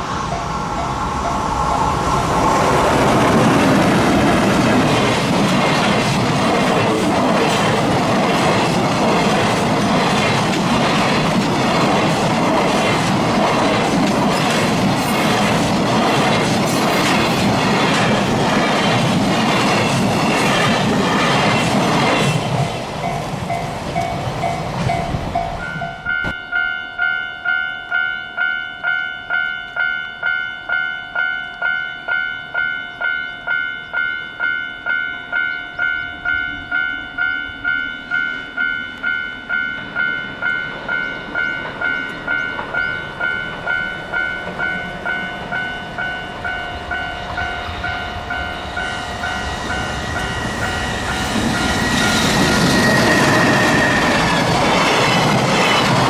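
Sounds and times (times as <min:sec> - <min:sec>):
freight train rushing past: 0:00.0 - 0:26.6, 0:31.6 - 0:56.0
pulsing ringing alarm: 0:23.1 - 0:55.8.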